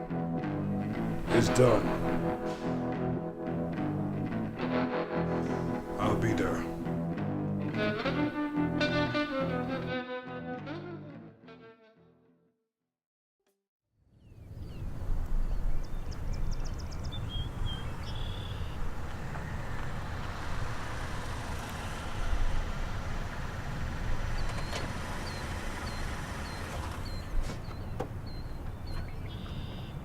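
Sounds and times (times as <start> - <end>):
small birds chirping: 14.2 - 30.0.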